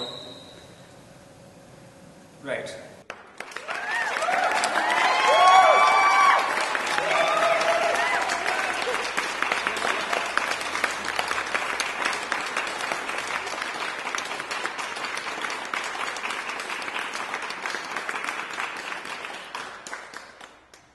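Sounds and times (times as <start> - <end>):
people applauding: 3.0 - 20.9.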